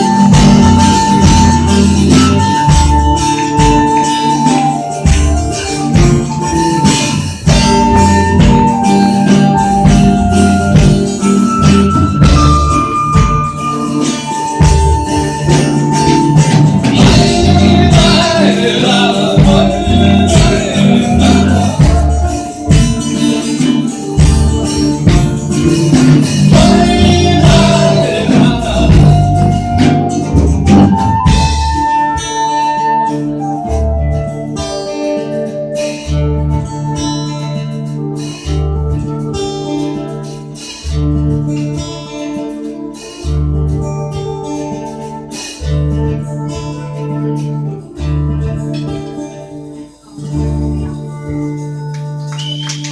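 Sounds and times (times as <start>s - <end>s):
drums hitting hard: 0.0s - 4.1s, 5.1s - 13.6s, 14.6s - 32.0s
live band playing: 0.0s - 52.9s
sustained guitar notes: 0.0s - 52.9s.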